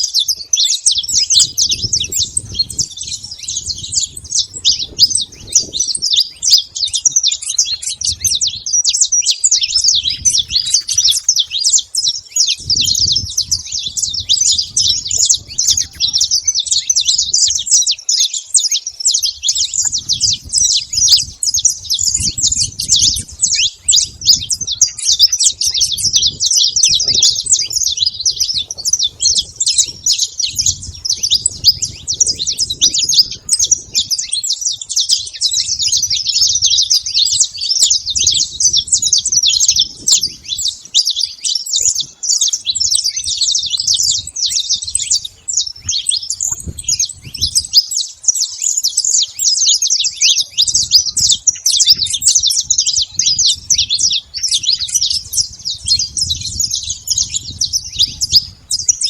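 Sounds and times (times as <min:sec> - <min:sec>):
flock of finches chirping: 0:00.0 - 0:59.0.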